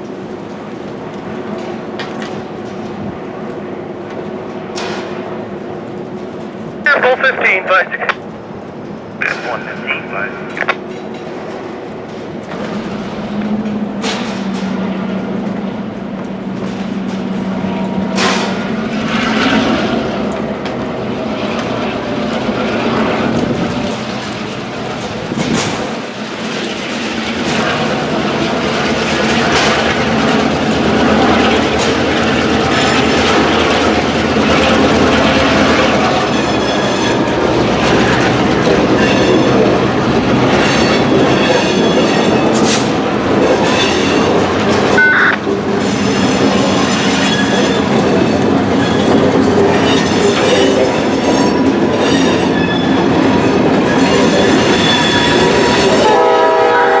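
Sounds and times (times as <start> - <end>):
freight train rumble: 0.0 - 57.0
train wheels clicking over rail joints: 10.7 - 56.1.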